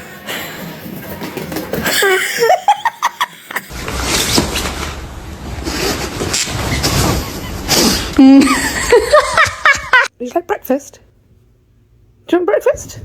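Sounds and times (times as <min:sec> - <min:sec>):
person laughing: 0:01.8 - 0:03.7, 0:07.2 - 0:10.1.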